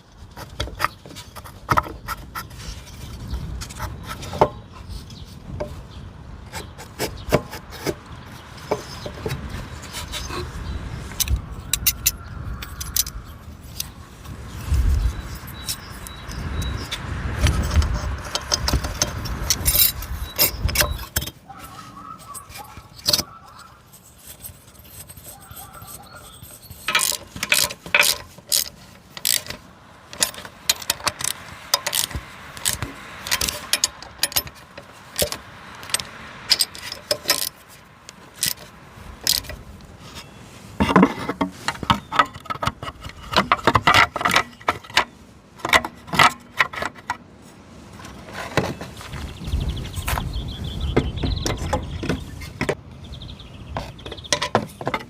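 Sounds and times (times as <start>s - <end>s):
metal tools clinking and rattling: 11.1s - 13.9s, 15.2s - 37.8s, 38.4s - 47.2s.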